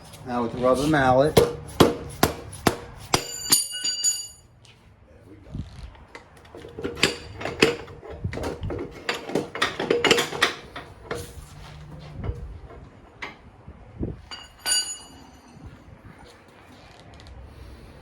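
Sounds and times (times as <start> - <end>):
rubber mallet knocking axle: 1.3 - 3.6
ringing metallic clink: 3.1 - 4.5, 14.3 - 15.7.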